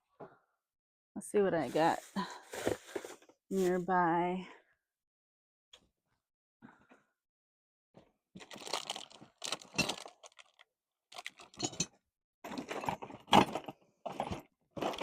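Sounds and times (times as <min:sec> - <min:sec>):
small hard objects clattering: 0:08.4 - 0:11.8.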